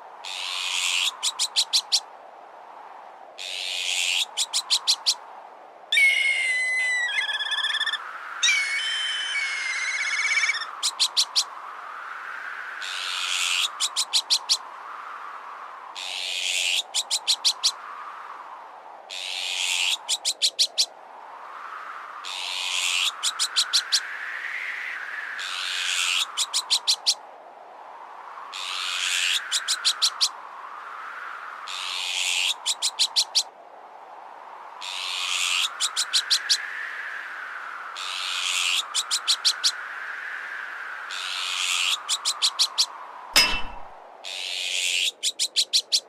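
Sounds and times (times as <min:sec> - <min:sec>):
gusting wind: 0:00.0 - 0:46.0
kite whistling trill calls: 0:05.9 - 0:11.0.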